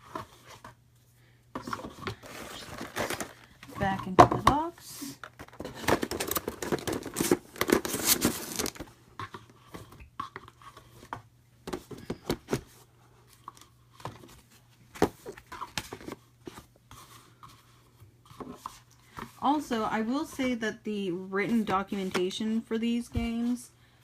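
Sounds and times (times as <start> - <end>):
plastic packaging crinkling: 2.2 - 3.6, 5.3 - 8.9.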